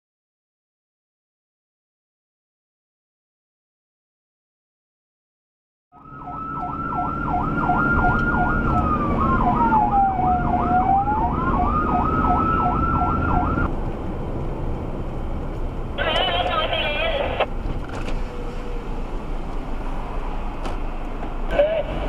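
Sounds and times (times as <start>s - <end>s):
fast yelping siren: 6.0s - 13.7s
wailing siren: 6.0s - 13.7s
low vehicle rumble: 6.0s - 22.0s.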